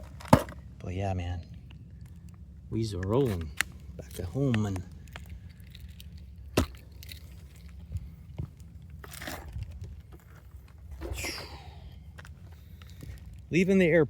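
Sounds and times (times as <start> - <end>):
crunching footsteps: 1.4 - 14.0.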